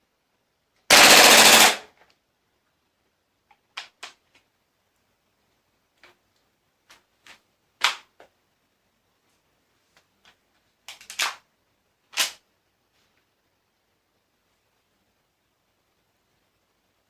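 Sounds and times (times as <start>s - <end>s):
airsoft gun shots: 0.9s - 1.9s.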